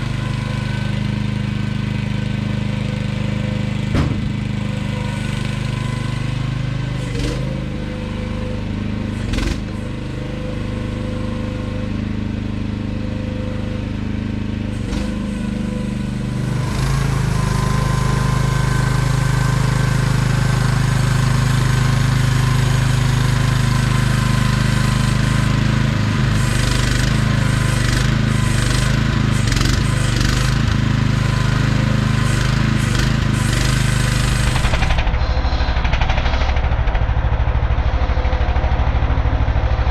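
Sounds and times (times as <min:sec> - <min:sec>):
excavator engine running: 0:00.0 - 0:39.9
clunks and knocks: 0:03.9 - 0:04.4.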